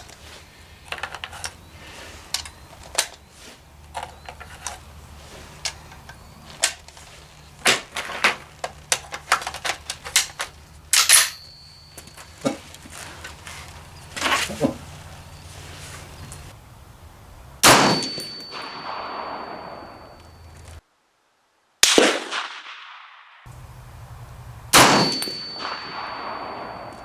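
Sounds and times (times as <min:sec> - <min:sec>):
cartridges clicking into magazine: 0:00.8 - 0:11.6
rifle clack with ringing tone: 0:08.9 - 0:12.6, 0:17.6 - 0:20.8, 0:24.8 - 0:27.0.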